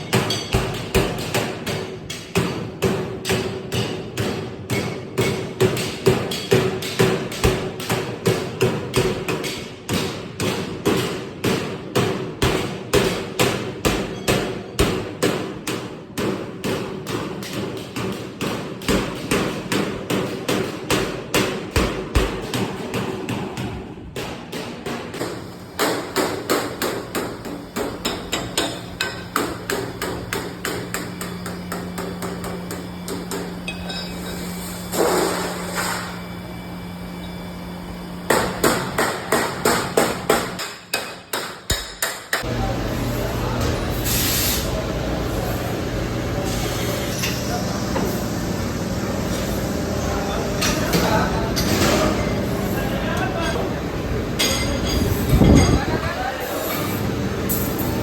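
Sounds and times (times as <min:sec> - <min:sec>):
hammer striking sheet metal: 0:00.0 - 0:36.0, 0:38.3 - 0:42.7.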